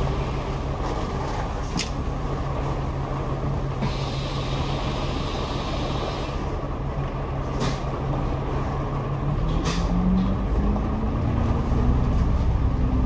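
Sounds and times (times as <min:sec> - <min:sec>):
bus engine hum: 0:00.0 - 0:13.0
bus air brake hisses: 0:03.8 - 0:06.4.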